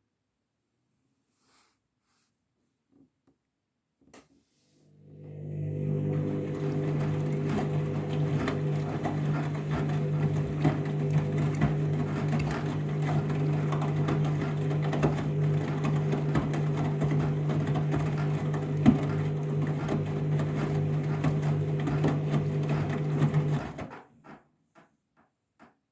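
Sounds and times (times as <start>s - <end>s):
washing machine motor hum: 4.9s - 24.0s.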